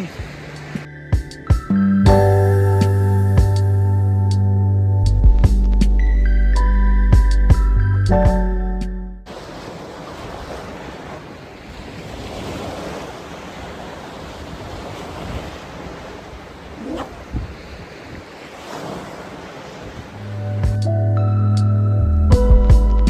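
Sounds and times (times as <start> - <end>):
background music: 0.0 - 9.2, 20.4 - 23.0
surf breaking on beach: 9.3 - 20.7
strong wind: 9.3 - 20.8.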